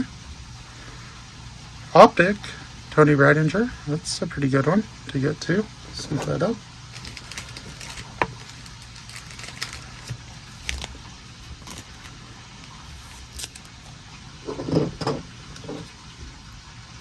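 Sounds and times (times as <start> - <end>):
cards tapping and rustling: 7.0 - 13.7.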